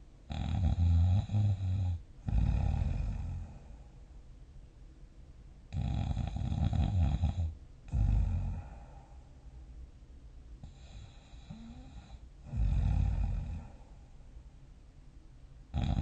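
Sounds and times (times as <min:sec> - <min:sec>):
person snoring: 0:00.3 - 0:03.8, 0:05.7 - 0:09.1, 0:10.6 - 0:13.9, 0:15.7 - 0:16.0
quiet breath: 0:01.3 - 0:04.3, 0:07.3 - 0:10.0, 0:10.6 - 0:14.8.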